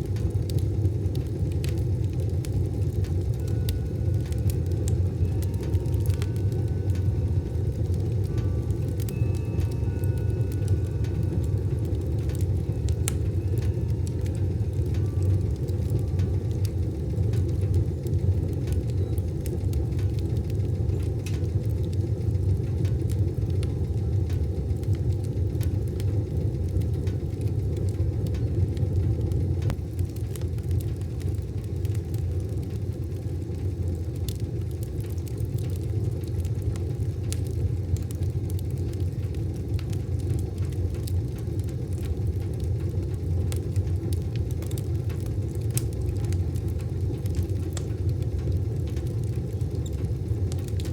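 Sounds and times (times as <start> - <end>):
fire crackling and popping: 0.0 - 50.9
wood stove fire rumbling: 0.0 - 50.9.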